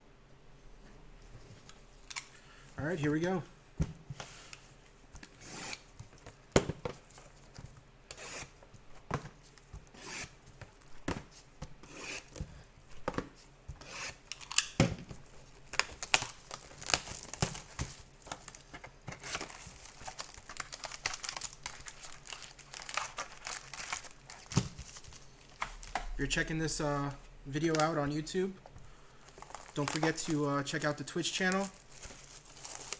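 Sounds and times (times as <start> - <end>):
packaging tearing and crinkling: 15.6 - 26.0, 29.3 - 32.9.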